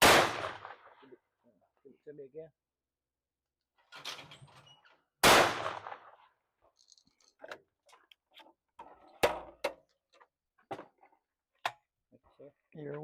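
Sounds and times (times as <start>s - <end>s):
shotgun shots: 0.0s - 1.0s, 5.2s - 6.2s.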